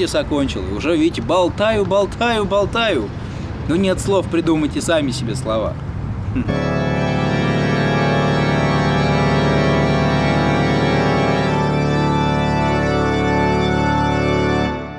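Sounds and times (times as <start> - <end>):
sustained organ chord: 6.4 - 14.9.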